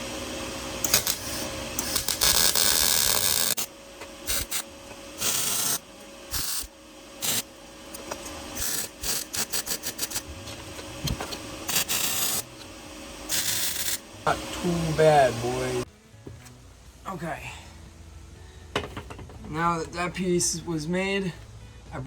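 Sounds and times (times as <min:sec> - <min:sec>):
arc welding crackling hiss: 0:00.0 - 0:15.9.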